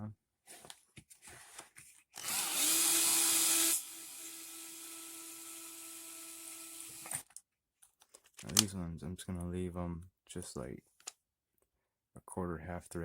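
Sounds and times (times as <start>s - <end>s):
cordless power drill spinning: 2.2s - 7.3s.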